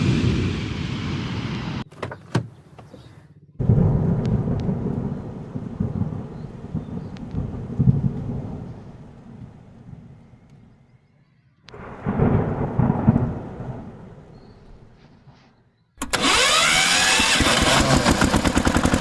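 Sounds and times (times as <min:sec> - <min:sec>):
low rumbling: 0:03.4 - 0:11.0, 0:11.7 - 0:18.2.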